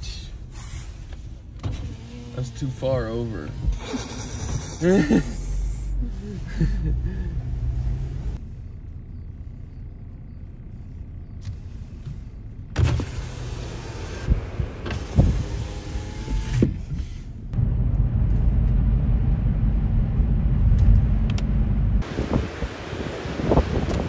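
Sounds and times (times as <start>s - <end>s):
wind buffeting microphone: 22.0s - 24.0s.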